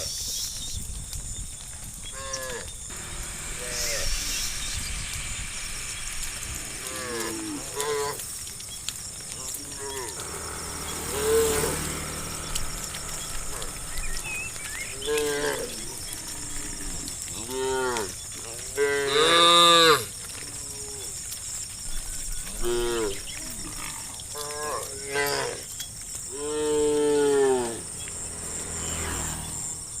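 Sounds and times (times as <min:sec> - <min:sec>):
insects trilling: 0:00.0 - 0:30.0
cows mooing: 0:02.2 - 0:08.5, 0:09.5 - 0:21.1, 0:22.4 - 0:25.7, 0:26.3 - 0:29.7.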